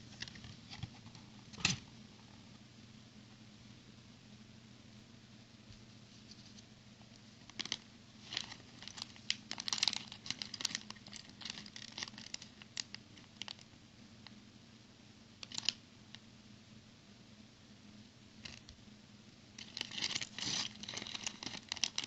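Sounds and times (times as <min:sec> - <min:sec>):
plastic packaging crinkling and tearing: 0:07.4 - 0:13.7, 0:15.4 - 0:15.8, 0:19.6 - 0:22.0.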